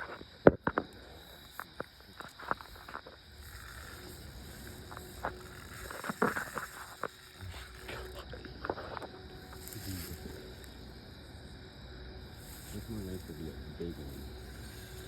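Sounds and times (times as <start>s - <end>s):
clicks and knocks from handling gear: 0.0s - 10.8s
crickets chirring: 0.0s - 15.0s.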